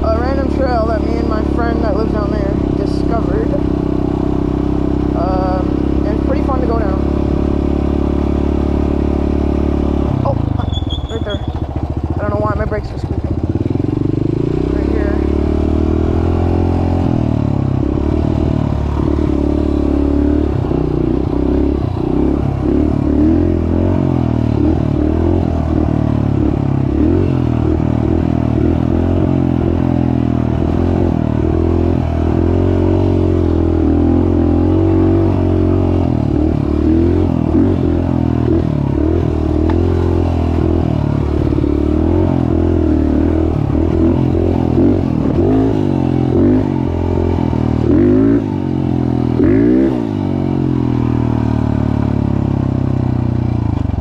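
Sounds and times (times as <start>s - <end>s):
off-road vehicle engine revving: 0.0s - 54.0s.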